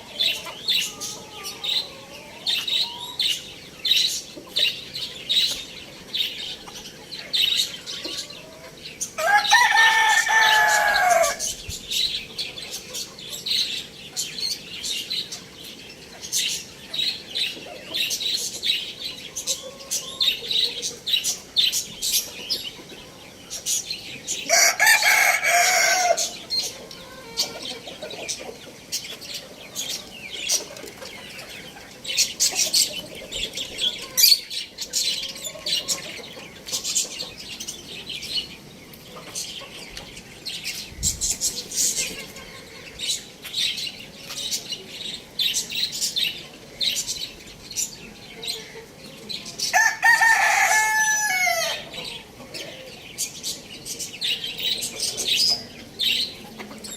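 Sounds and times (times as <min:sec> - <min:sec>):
chickens chirping: 0:00.0 - 0:56.9
loud chicken call: 0:09.2 - 0:11.5, 0:24.4 - 0:27.7, 0:49.7 - 0:51.9.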